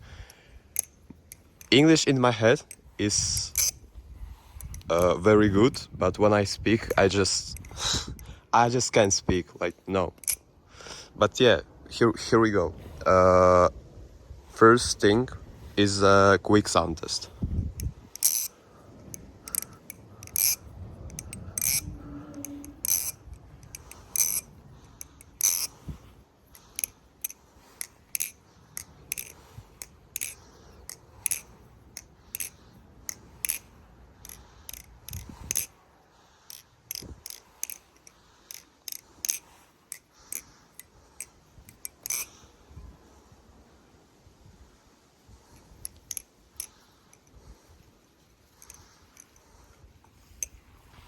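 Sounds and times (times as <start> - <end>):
butterfly knife metallic clicks: 0.2 - 5.9, 6.7 - 8.3, 10.1 - 10.5, 17.7 - 35.8, 36.5 - 42.5, 45.6 - 47.4, 48.6 - 49.5.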